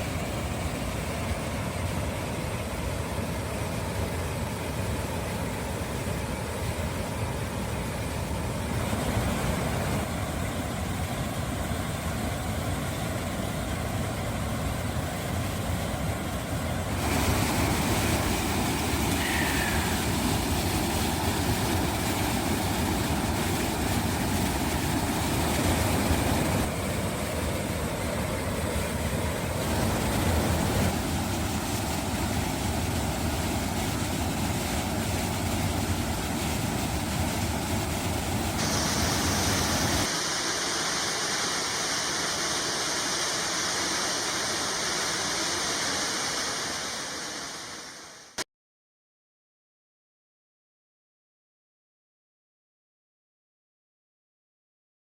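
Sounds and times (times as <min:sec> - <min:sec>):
waterfall rushing: 0:16.9 - 0:28.6, 0:29.3 - 0:48.4.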